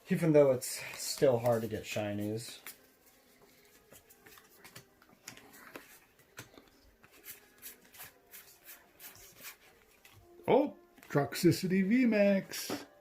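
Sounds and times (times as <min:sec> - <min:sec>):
trading cards flipped by hand: 0:00.8 - 0:10.2.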